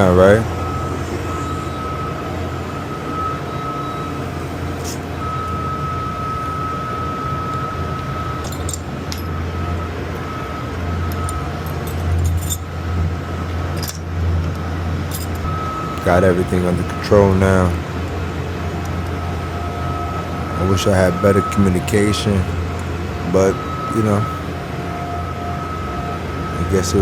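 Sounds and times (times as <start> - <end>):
thin high tone: 0.0 - 14.0, 15.1 - 17.9, 19.0 - 27.0
boiler burner rumbling: 0.0 - 27.0
light clinks: 8.4 - 9.3, 11.1 - 12.8, 13.7 - 14.1, 15.1 - 15.5.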